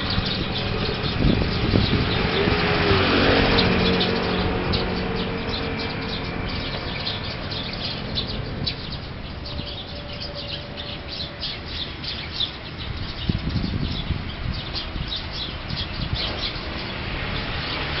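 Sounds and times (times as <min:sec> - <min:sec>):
small birds chirping: 0:00.0 - 0:18.0.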